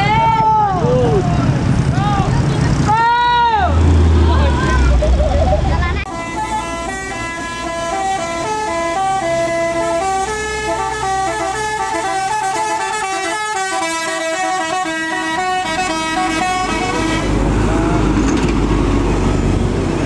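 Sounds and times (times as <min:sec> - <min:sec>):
bus engine running low: 0:00.0 - 0:20.0
musical bus horn melody: 0:06.1 - 0:17.6.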